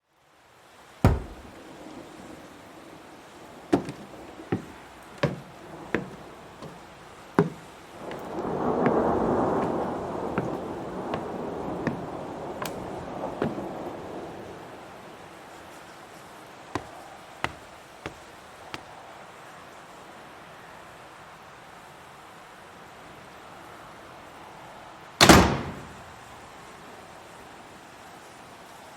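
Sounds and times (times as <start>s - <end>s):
door rattling and banging: 1.0s - 1.8s, 3.7s - 13.7s, 16.8s - 18.2s, 25.2s - 26.2s
light taps: 16.8s - 18.3s.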